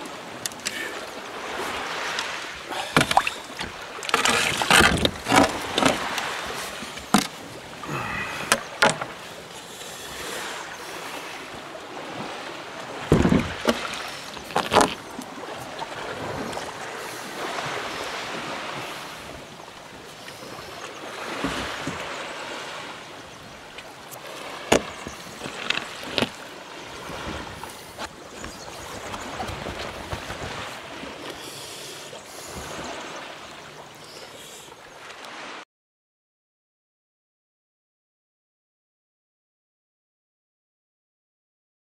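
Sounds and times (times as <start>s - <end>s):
water sloshing around kayak: 0.0s - 35.6s
sharp splashes or knocks: 1.6s - 7.4s, 13.0s - 15.0s.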